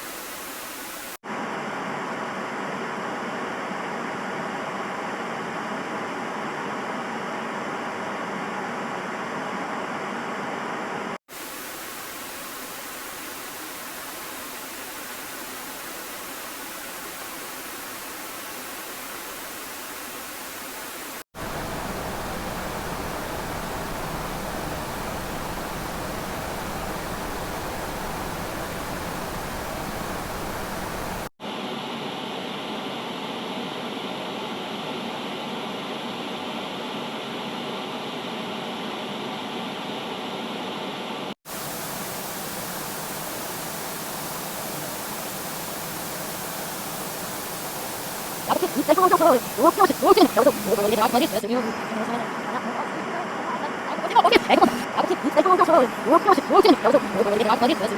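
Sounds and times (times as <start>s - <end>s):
steady hissing noise: 0.0s - 1.2s, 11.3s - 31.3s, 41.5s - 57.9s.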